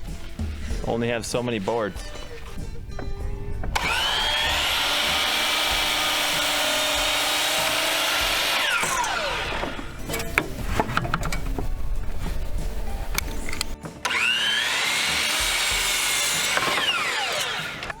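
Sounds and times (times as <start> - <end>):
wood knocking and clattering: 0.0 - 12.4
power saw cutting wood: 3.7 - 10.4, 13.9 - 18.0.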